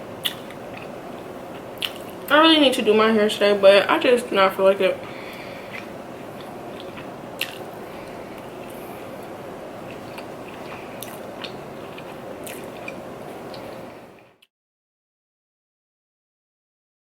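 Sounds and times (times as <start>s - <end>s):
person chewing: 0.2s - 2.3s, 5.3s - 14.4s.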